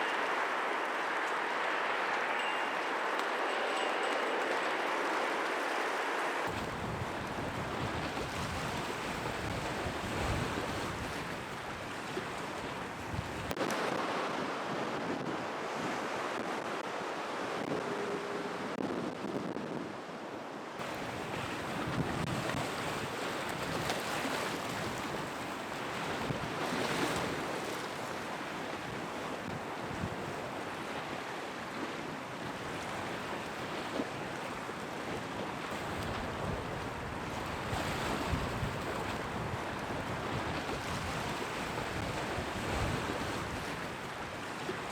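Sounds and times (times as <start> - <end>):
sea waves breaking: 0.0 - 44.9
wind buffeting microphone: 6.4 - 16.8, 20.8 - 30.9, 31.8 - 44.9.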